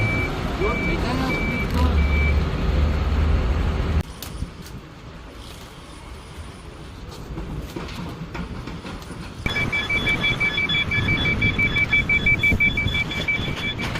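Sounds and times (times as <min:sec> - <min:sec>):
reversing alarm beeps: 0:00.0 - 0:02.4, 0:09.4 - 0:13.9
vehicle engine rumbling: 0:00.0 - 0:13.9.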